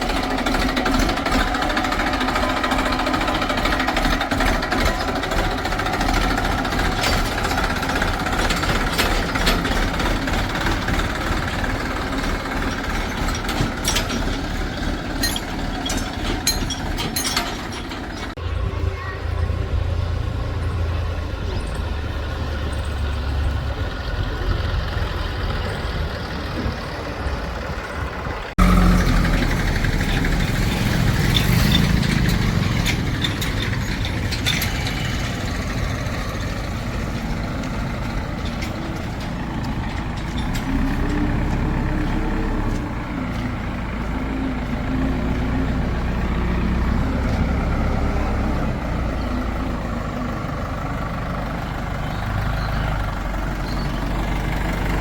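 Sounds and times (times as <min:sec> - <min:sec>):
metallic knocks and clanks: 0:00.0 - 0:18.4, 0:28.6 - 0:47.7
diesel engines running: 0:00.0 - 0:55.0.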